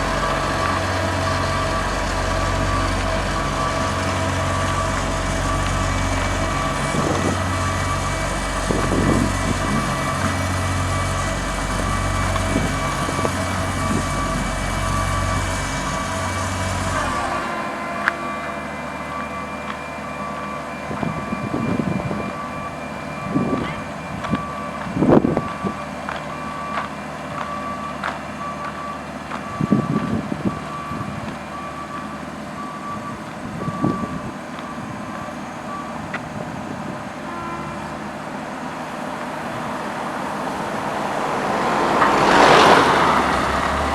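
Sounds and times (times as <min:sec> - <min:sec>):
deep pulsing low rumble: 0:00.0 - 0:19.8
diesel engine noise: 0:00.0 - 0:43.9
reversing alarm beeping: 0:00.0 - 0:43.9.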